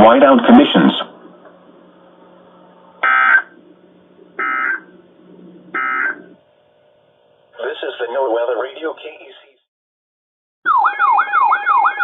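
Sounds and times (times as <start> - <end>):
faint radio hiss and hum: 0.0 - 5.8, 6.4 - 9.6.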